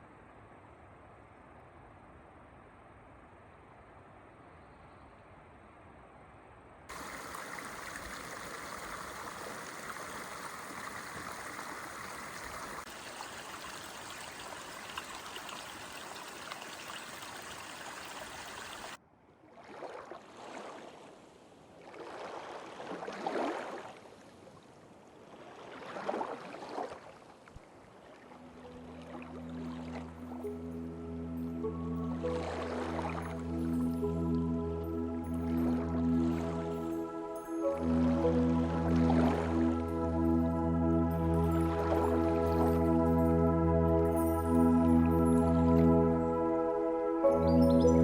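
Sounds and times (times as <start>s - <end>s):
soft water sounds: 3.4s - 48.0s
stream water rushing: 6.9s - 19.0s, 27.8s - 48.0s
music: 28.3s - 48.0s.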